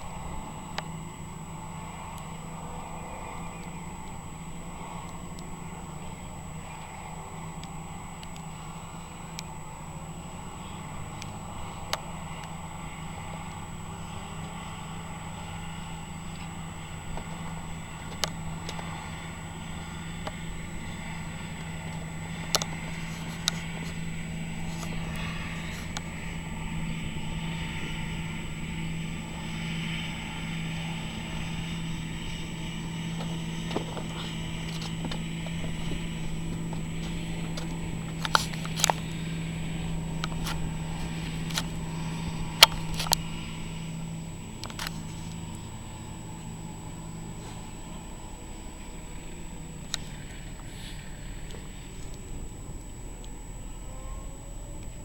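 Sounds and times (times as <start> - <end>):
farm machinery engine running: 0.0 - 55.0
sharp clanks and clicks: 33.1 - 43.4, 44.6 - 45.7.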